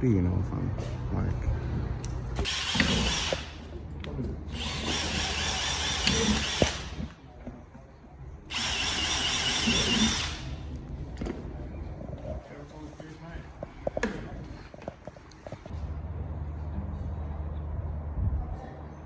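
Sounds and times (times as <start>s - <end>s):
power tool whining: 2.4s - 3.8s, 4.6s - 7.1s, 8.5s - 10.7s.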